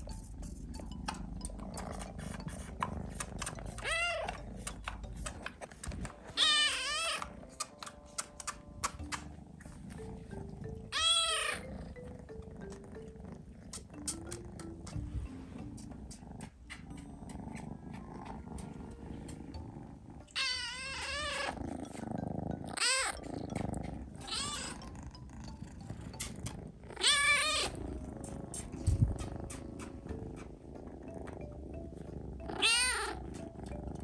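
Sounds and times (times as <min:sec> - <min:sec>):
cat purring: 0:00.0 - 0:34.0
small clicks: 0:00.9 - 0:09.3.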